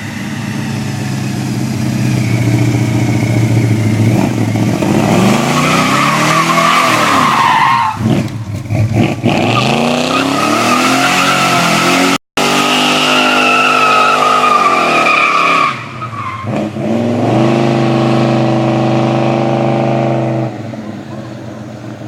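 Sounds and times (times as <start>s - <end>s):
car engine revving: 0.0s - 21.1s
tyres squealing: 5.3s - 8.3s.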